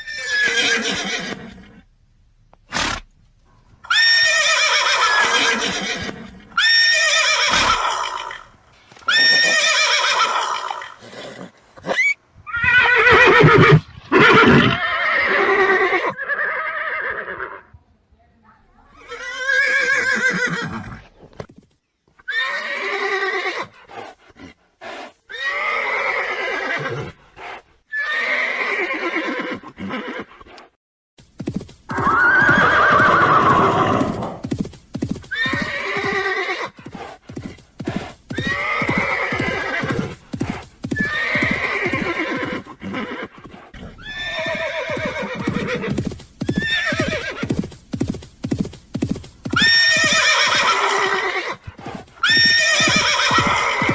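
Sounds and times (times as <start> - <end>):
hooves clip-clopping: 3.5 - 14.2, 31.2 - 42.7, 44.5 - 53.9
horses neighing: 3.7 - 17.4, 31.9 - 34.5, 35.3 - 37.1, 37.8 - 47.6, 49.4 - 53.9.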